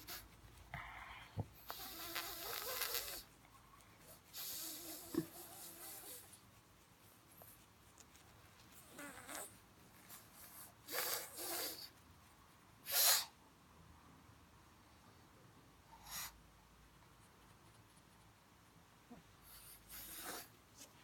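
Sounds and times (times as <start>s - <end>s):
dog sneezing through its nose: 12.8s - 13.4s.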